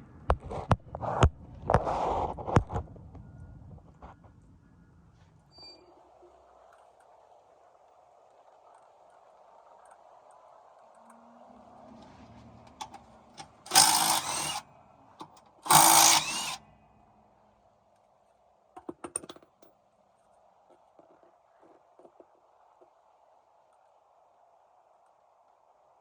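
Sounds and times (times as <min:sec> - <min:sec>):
power tool running: 0:12.8 - 0:14.6, 0:15.2 - 0:16.6.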